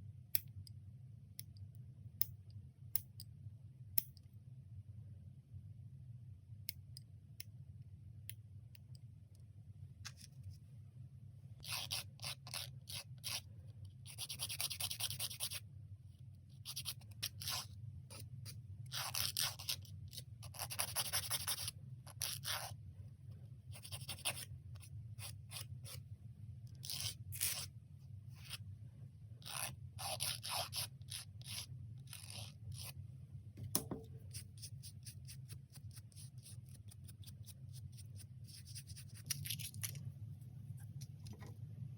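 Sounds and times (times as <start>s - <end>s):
steady low hum: 0.0s - 11.6s, 19.8s - 41.9s
manicure tools scraping fingernails: 11.6s - 13.4s, 18.9s - 22.7s, 26.8s - 27.7s, 29.4s - 33.0s, 34.2s - 40.0s.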